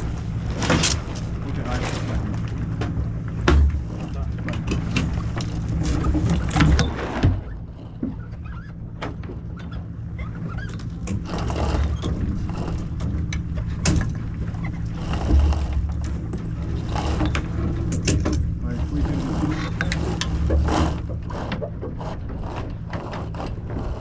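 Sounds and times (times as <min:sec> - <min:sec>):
boat fittings clicking and knocking: 0:02.8 - 0:18.5, 0:19.8 - 0:24.0.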